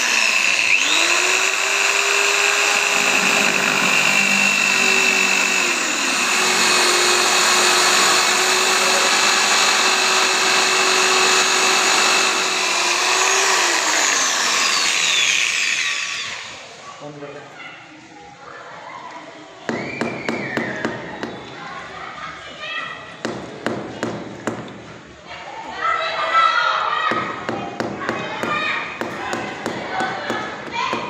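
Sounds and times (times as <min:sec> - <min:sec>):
power tool motor whining and grinding: 0:00.0 - 0:16.8.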